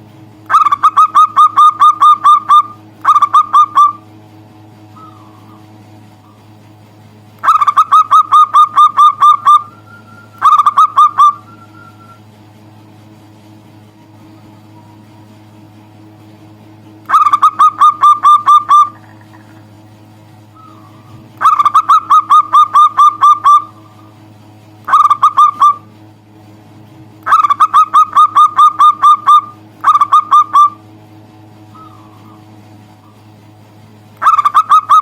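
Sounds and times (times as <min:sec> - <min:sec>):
dove calling: 0:00.5 - 0:04.2, 0:04.8 - 0:06.6, 0:07.4 - 0:12.3, 0:17.0 - 0:26.0, 0:27.2 - 0:31.0, 0:31.6 - 0:33.4, 0:34.2 - 0:35.0.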